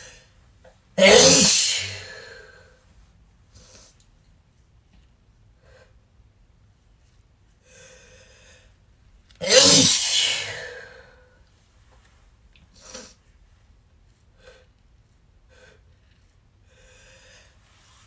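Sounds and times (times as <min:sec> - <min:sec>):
person sneezing: 0:01.0 - 0:02.6, 0:09.4 - 0:11.2.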